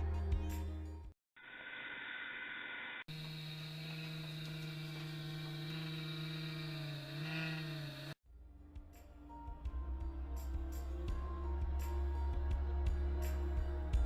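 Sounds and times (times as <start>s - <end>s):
dull machine noise: 1.4s - 8.2s
humidifier humming: 3.1s - 8.1s.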